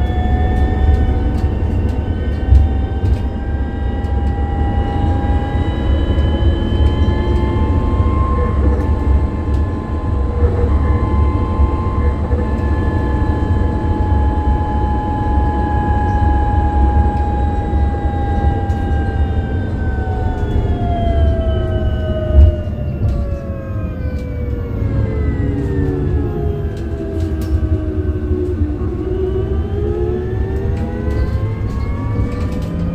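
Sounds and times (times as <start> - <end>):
electric bus motor whining: 0.0 - 32.9
road and body rumble: 0.0 - 32.9.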